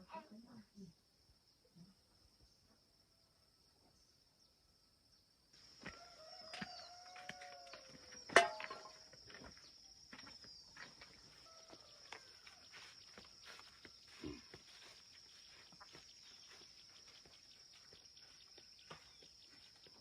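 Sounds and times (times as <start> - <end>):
high insect drone: 0.2 - 20.0
small birds calling: 9.6 - 20.0.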